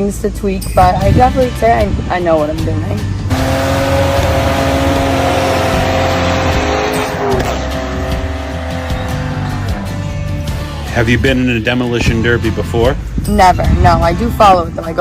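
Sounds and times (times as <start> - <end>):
car engine revving high: 3.2 - 10.9.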